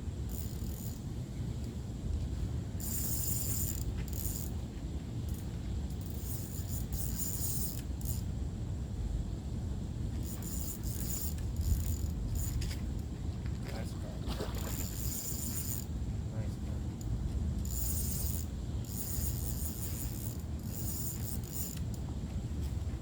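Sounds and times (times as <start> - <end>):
fishing reel ratcheting: 0.3 - 1.1, 2.8 - 4.5, 5.3 - 8.3, 10.2 - 12.8, 14.6 - 15.9, 17.0 - 22.0.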